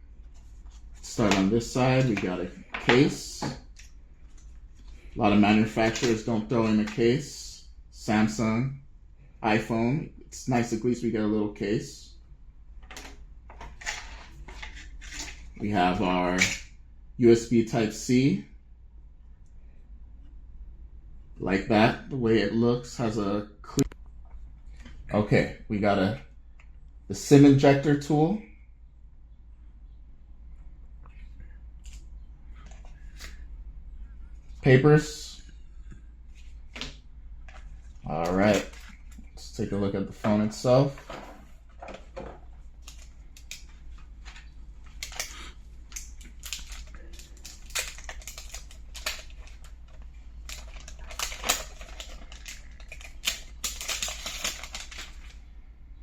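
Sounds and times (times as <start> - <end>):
steady low hum: 0.0 - 56.0
packaging rustling: 36.4 - 39.3, 40.9 - 55.4.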